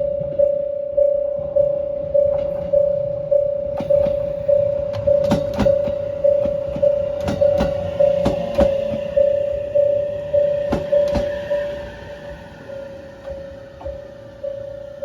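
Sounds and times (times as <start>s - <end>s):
level-crossing alarm ringing: 0.0s - 15.0s
train wheels clacking over rail joints: 3.8s - 15.0s.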